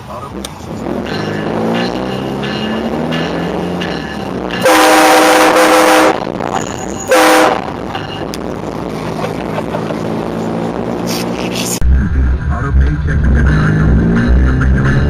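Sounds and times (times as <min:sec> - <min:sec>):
train horn multi-tone blasts: 0:03.8 - 0:06.3, 0:07.0 - 0:07.8.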